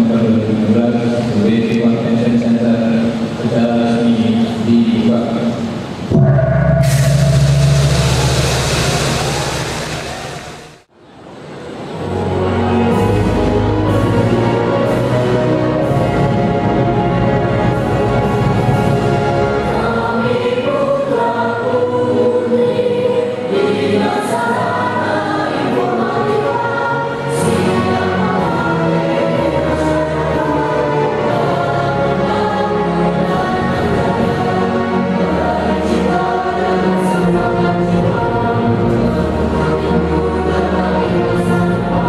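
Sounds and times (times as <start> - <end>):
choir singing: 12.1 - 42.0.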